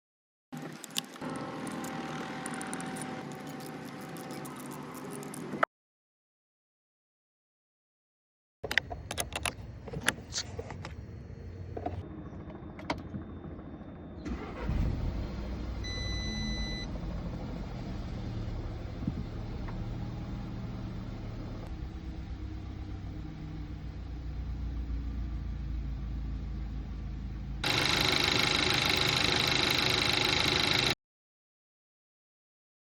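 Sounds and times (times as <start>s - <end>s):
car engine starting and idling: 8.7s - 31.0s.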